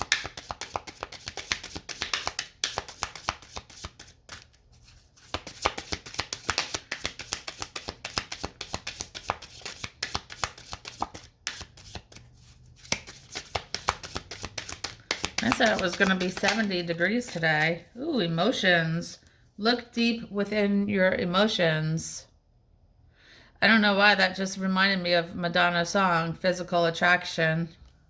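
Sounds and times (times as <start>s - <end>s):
cards being shuffled: 0.0s - 17.8s.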